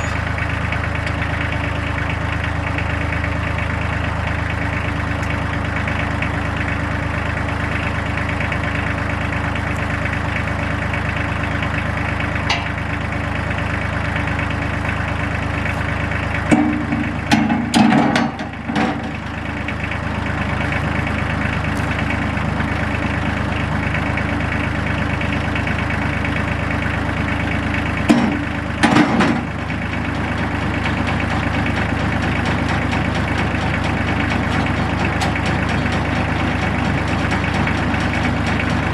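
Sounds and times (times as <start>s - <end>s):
tractor engine running: 0.0s - 38.9s
clunks and knocks: 12.4s - 12.8s, 14.7s - 22.7s, 28.1s - 29.5s, 32.4s - 38.9s.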